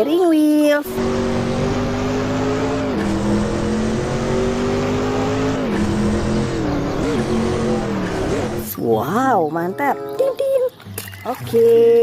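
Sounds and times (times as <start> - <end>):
electronic car engine revving: 0.8 - 8.8.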